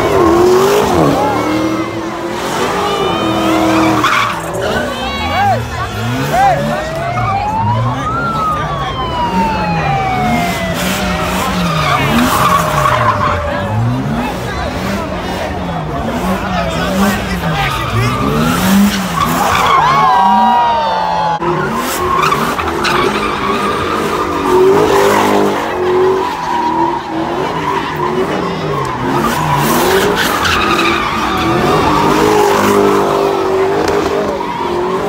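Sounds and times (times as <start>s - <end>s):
car engine revving: 0.0s - 35.0s
tyres squealing: 21.6s - 35.0s.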